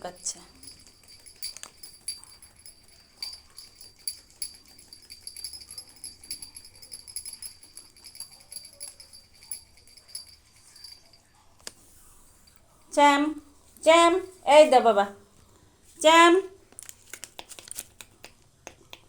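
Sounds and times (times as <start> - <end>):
metal tag jingling: 0.0 - 15.0.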